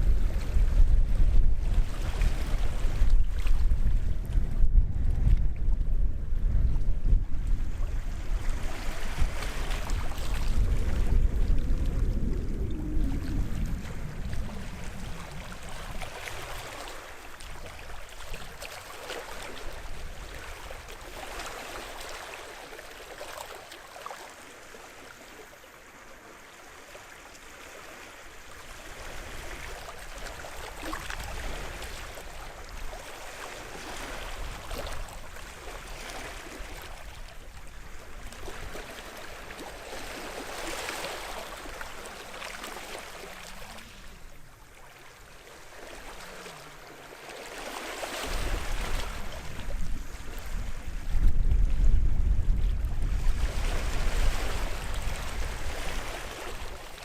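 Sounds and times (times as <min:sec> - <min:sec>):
small waves lapping on shore: 0:00.0 - 0:06.0, 0:06.6 - 0:57.0.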